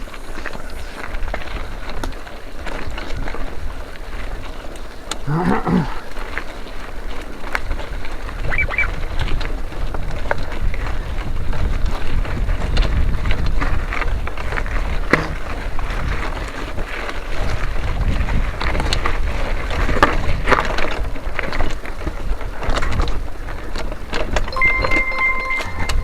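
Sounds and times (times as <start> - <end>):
wind buffeting microphone: 6.9 - 24.5
steady tone: 24.5 - 26.0.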